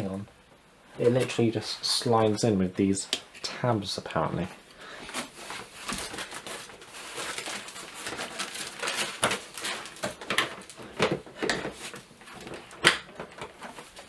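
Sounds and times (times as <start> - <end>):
plastic rustling and scraping: 0.9 - 14.0
plastic snapping into place: 12.6 - 13.5.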